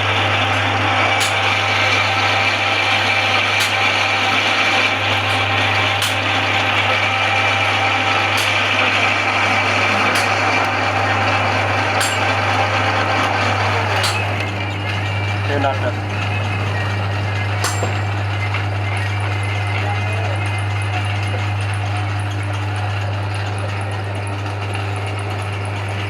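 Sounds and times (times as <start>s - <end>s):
metal lathe humming: 0.0s - 26.0s.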